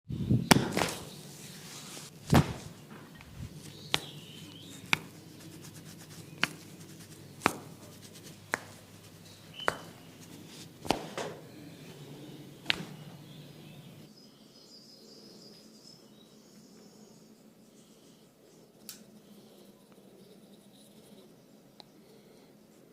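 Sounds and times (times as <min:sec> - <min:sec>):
sharp cracks: 0:00.5 - 0:01.2, 0:02.2 - 0:02.8, 0:10.8 - 0:11.4, 0:12.6 - 0:13.0.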